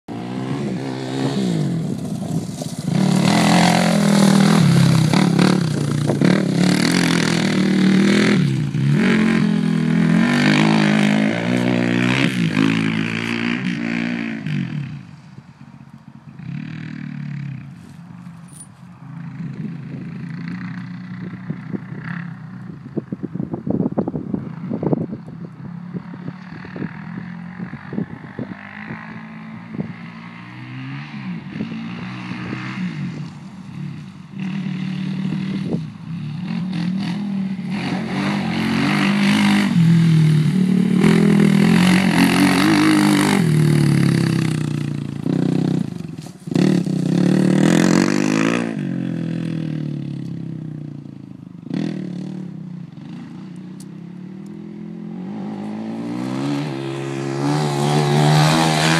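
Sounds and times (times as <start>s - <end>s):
quad bike engine revving: 0.1s - 15.1s, 16.3s - 17.7s, 25.9s - 58.9s.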